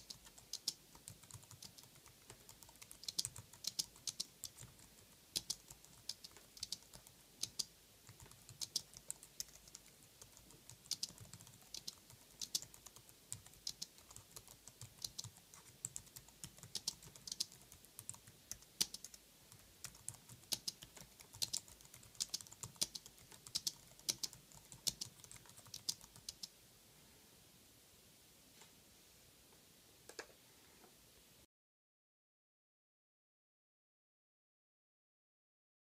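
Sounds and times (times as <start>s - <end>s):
keyboard typing clicks: 0.0s - 19.2s, 19.8s - 26.5s.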